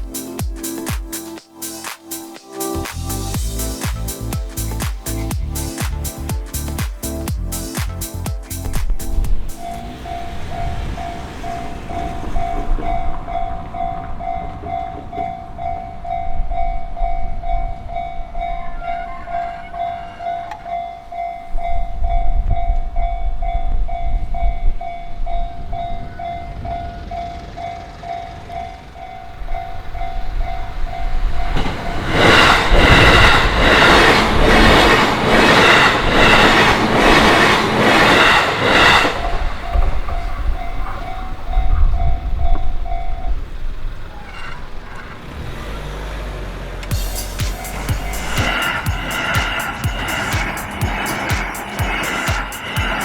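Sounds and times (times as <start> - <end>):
electric train passing: 0.0 - 7.6, 8.5 - 53.0
wheels clattering over rail joints: 9.6 - 17.6, 27.1 - 53.0
level-crossing warning bell: 9.6 - 45.1, 46.9 - 53.0.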